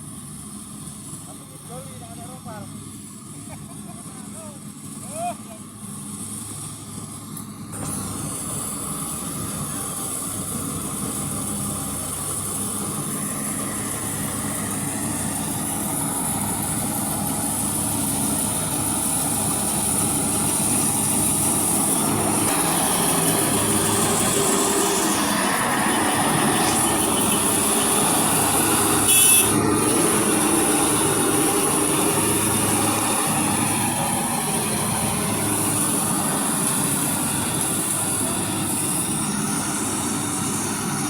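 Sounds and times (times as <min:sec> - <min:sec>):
combine harvester engine hum: 0:00.0 - 0:41.0
high steady whine: 0:11.1 - 0:41.0.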